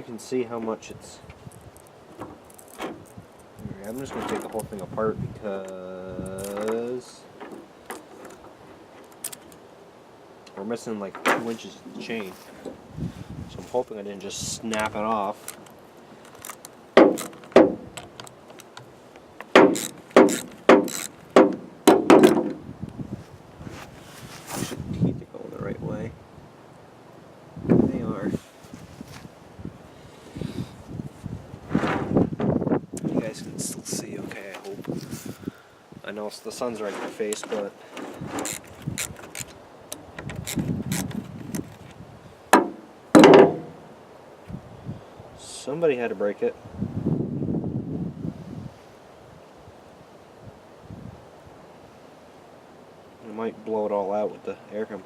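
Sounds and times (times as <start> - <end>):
chainsaw parts clicking and rattling: 1.5 - 4.8, 5.6 - 9.6, 14.6 - 22.6, 36.9 - 42.0
sharp ringing knocks on metal: 42.6 - 43.8.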